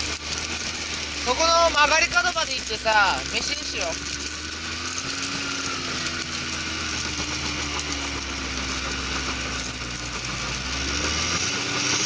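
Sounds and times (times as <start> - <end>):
car engine pulling uphill: 0.0 - 12.0
tyre chains jingling: 0.0 - 12.0.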